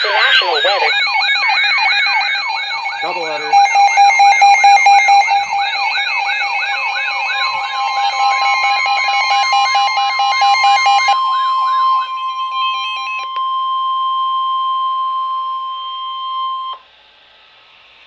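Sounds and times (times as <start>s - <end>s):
steady alert tone: 0.0s - 13.2s
siren-like wail: 0.0s - 16.8s.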